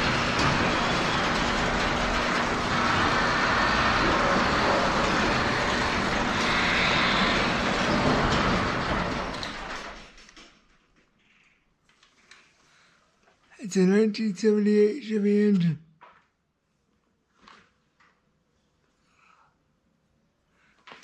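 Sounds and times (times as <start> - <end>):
loud humming machine noise: 0.0 - 10.0.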